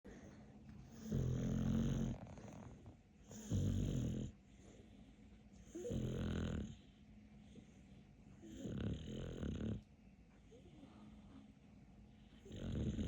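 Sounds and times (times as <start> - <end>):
dog breathing: 0.1 - 9.8
dog snoring: 0.8 - 4.4, 5.6 - 6.9, 8.4 - 9.9, 12.2 - 13.0.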